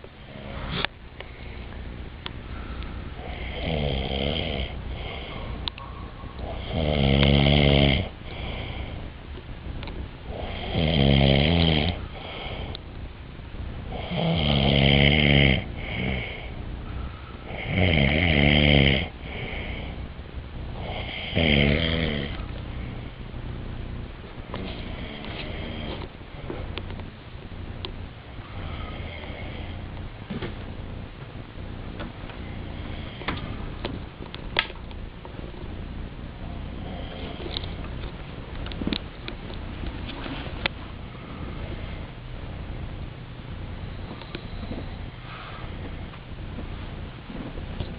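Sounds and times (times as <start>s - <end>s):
person snoring loudly: 3.2s - 5.6s, 6.4s - 9.0s, 10.3s - 12.8s, 13.9s - 16.5s, 17.4s - 20.0s, 20.7s - 22.5s, 24.6s - 26.0s, 28.5s - 29.8s.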